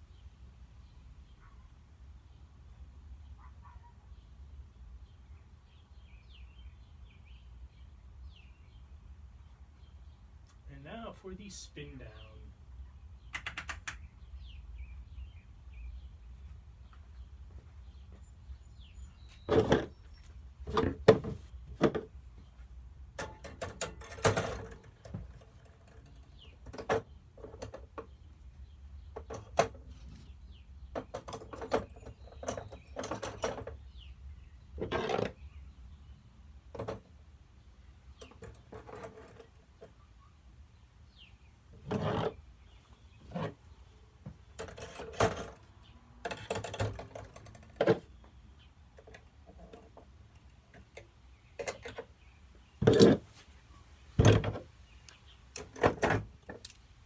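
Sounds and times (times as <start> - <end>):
ceiling fan clicks and knocks: 23.2 - 28.2, 54.2 - 56.8.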